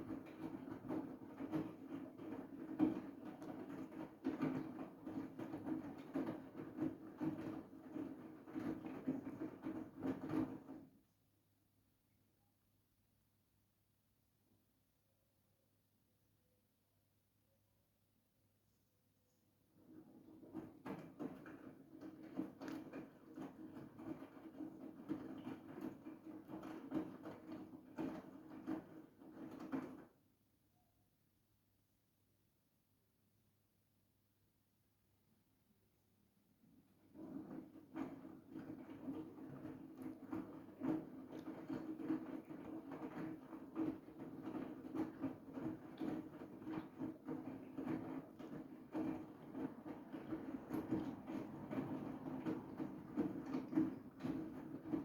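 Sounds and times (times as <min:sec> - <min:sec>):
washing machine motor hum: 0:19.7 - 0:30.0, 0:36.6 - 0:55.0
laundry and water sloshing: 0:19.8 - 0:30.1, 0:36.7 - 0:55.0.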